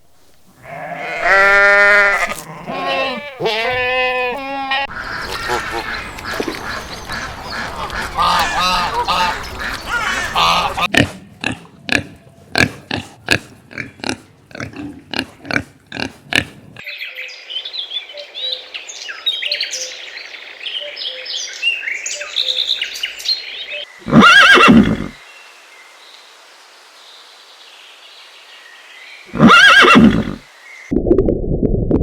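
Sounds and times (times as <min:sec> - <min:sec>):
loud animal call: 0:00.6 - 0:10.9, 0:29.3 - 0:30.4.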